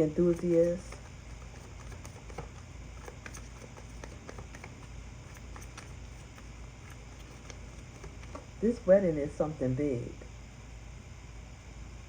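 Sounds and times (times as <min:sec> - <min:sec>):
faint low hum: 0:00.0 - 0:12.0
small clicks and taps: 0:00.3 - 0:08.5.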